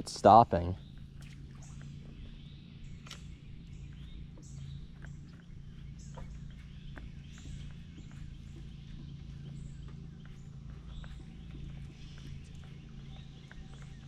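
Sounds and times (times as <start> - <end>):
steady low hum: 0.0 - 14.0
faint bird calls: 0.7 - 14.0.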